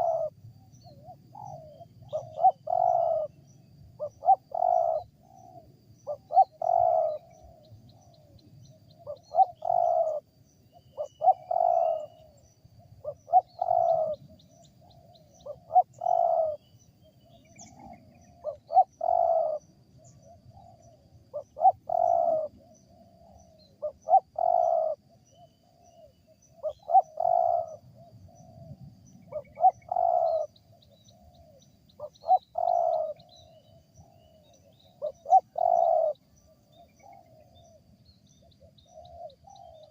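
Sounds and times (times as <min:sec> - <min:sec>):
dove cooing: 0:00.0 - 0:03.4, 0:04.0 - 0:08.4, 0:09.0 - 0:10.2, 0:11.0 - 0:12.4, 0:13.0 - 0:16.6, 0:17.4 - 0:28.7, 0:29.3 - 0:37.8, 0:38.4 - 0:39.9.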